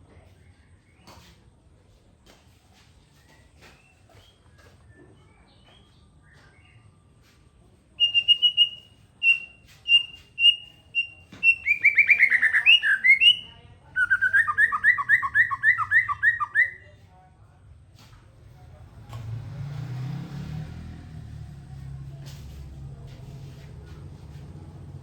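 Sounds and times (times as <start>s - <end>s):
songbird singing: 3.1s - 7.1s, 8.0s - 17.0s.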